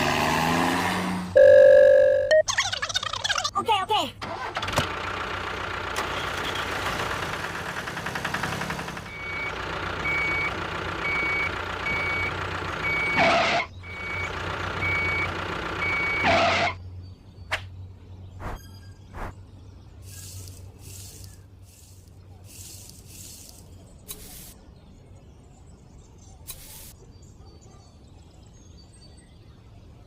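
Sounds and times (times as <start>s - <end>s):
vehicle engine running: 4.2s - 17.2s, 20.1s - 24.6s
reversing beeps: 9.1s - 16.4s.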